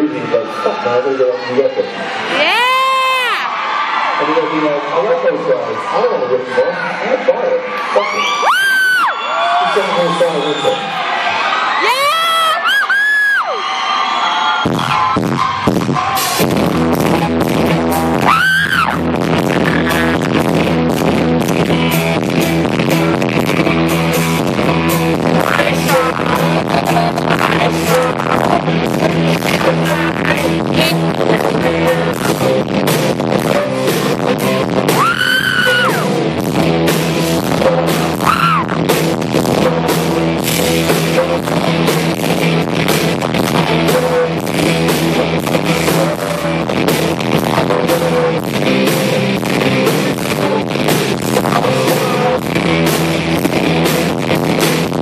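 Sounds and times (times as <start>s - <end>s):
live rock band playing: 14.6s - 55.0s
person singing or yelling: 34.9s - 36.2s, 37.5s - 38.7s.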